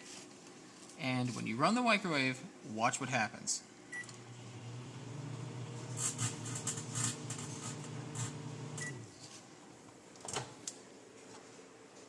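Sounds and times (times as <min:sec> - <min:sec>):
microwave oven humming: 0:03.7 - 0:09.2.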